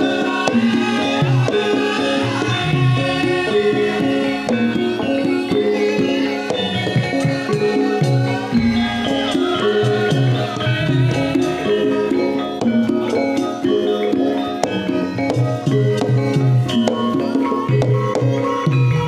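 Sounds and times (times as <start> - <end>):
gamelan music: 0.0 - 19.0
drum strokes: 3.1 - 19.0.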